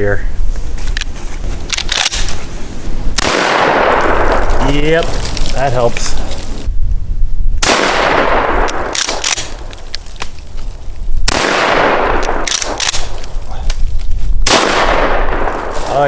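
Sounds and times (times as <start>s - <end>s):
shotgun blasts: 3.2s - 4.9s, 7.6s - 9.7s, 11.2s - 13.2s, 14.4s - 16.0s.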